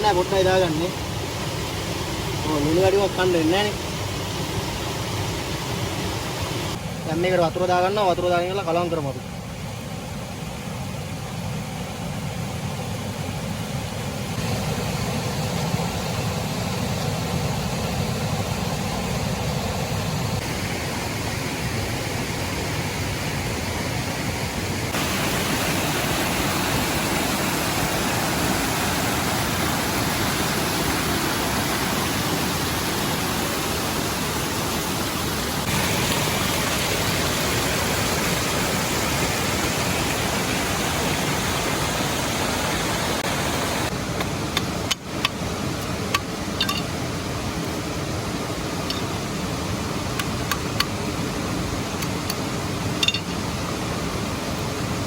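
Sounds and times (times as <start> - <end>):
steady rushing hiss: 0.0 - 55.0.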